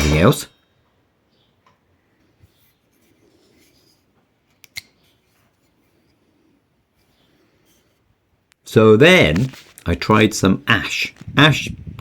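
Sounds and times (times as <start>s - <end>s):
rustling of small objects: 9.3s - 10.0s.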